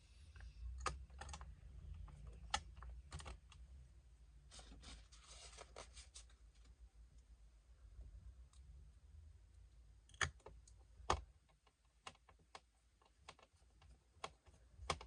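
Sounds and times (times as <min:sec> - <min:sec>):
laptop parts clicking: 0:00.7 - 0:03.6, 0:10.1 - 0:15.0.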